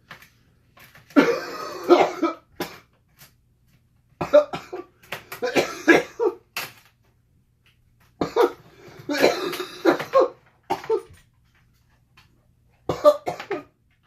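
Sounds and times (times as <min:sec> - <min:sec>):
man coughing: 0:01.2 - 0:02.9, 0:04.2 - 0:06.4, 0:08.2 - 0:11.1, 0:12.9 - 0:13.7.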